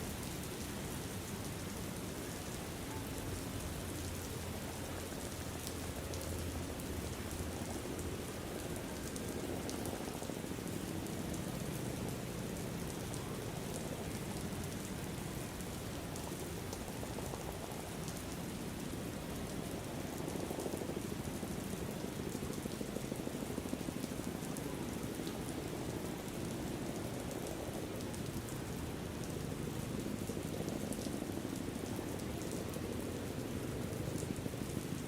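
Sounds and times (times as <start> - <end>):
raindrops pattering: 0.0 - 35.0
steady rain: 0.0 - 35.0.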